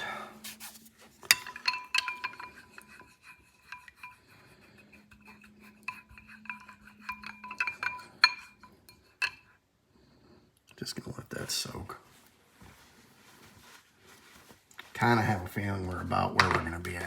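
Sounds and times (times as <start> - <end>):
metal parts clinking in a dish: 1.2 - 4.2, 5.2 - 9.5.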